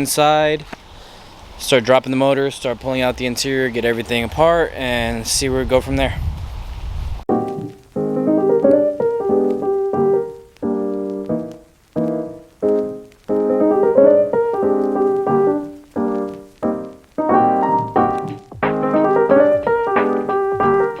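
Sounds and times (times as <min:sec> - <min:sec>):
piano music: 0:07.3 - 0:21.0.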